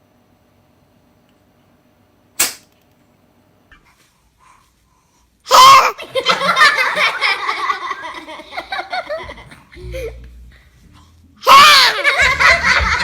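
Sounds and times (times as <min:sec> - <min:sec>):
person sneezing: 0:05.5 - 0:06.0
person laughing: 0:06.0 - 0:10.4, 0:11.5 - 0:13.0.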